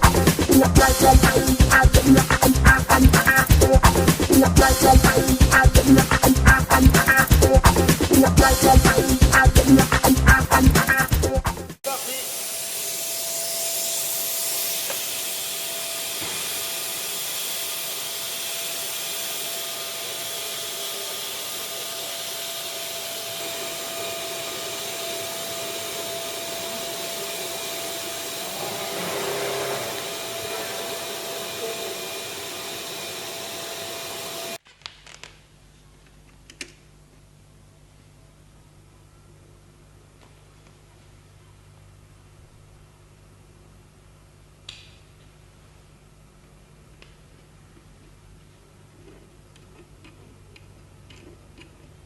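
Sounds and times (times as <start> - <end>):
hot-air blower hissing: 0.0 - 11.0, 11.8 - 34.6.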